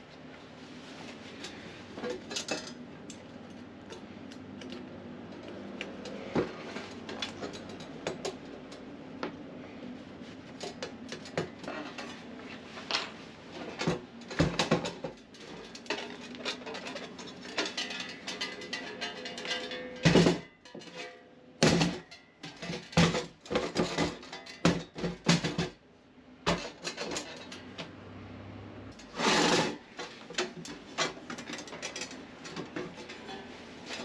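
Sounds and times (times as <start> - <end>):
steel plates clinking and knocking: 15.8 - 21.2.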